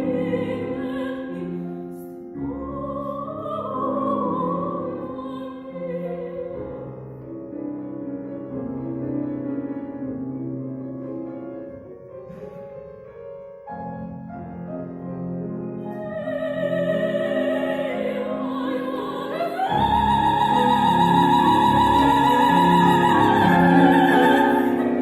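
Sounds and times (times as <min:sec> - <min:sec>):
woman singing with vibrato: 0:00.0 - 0:06.8, 0:15.8 - 0:25.0
piano: 0:00.0 - 0:25.0.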